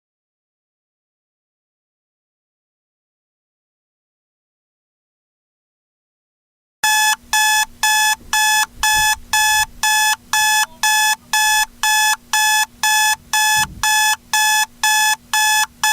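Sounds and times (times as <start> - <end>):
shrill alarm clock beeping: 6.8 - 15.9.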